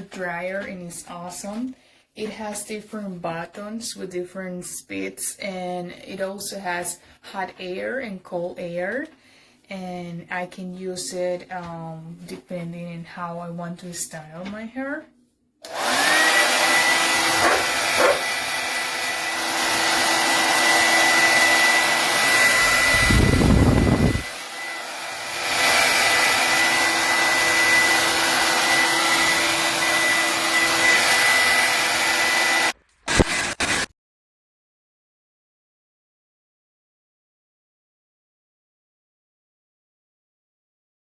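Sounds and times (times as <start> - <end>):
hair dryer running: 15.6 - 33.9.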